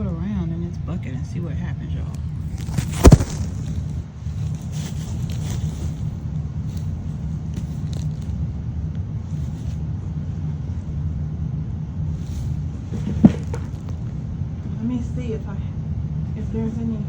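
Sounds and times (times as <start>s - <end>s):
hands rustling dry soil: 2.2s - 10.9s, 12.1s - 14.2s.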